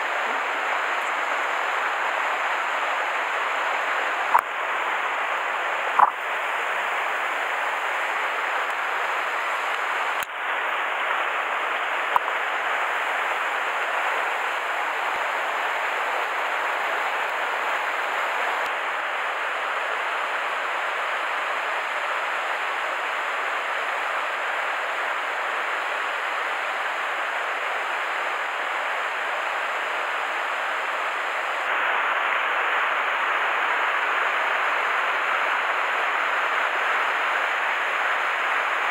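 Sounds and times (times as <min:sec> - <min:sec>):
stream water rushing: 0:00.0 - 0:38.9
sharp clicks: 0:06.0 - 0:06.2.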